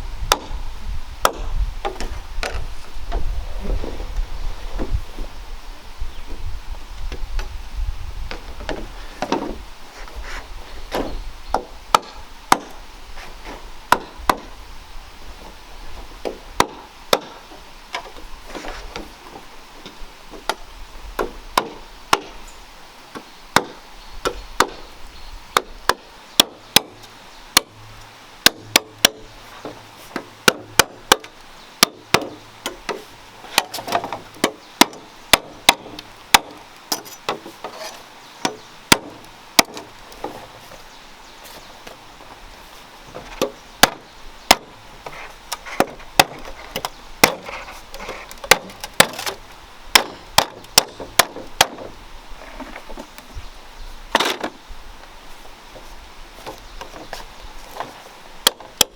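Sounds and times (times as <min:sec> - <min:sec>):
chopping blows on bamboo: 0:00.2 - 0:00.6, 0:01.2 - 0:02.6, 0:10.9 - 0:12.8, 0:13.5 - 0:14.6, 0:16.2 - 0:17.4, 0:21.2 - 0:22.4, 0:23.1 - 0:24.9, 0:25.5 - 0:27.8, 0:28.4 - 0:37.8, 0:38.4 - 0:40.5, 0:43.1 - 0:52.0, 0:57.8 - 0:58.9.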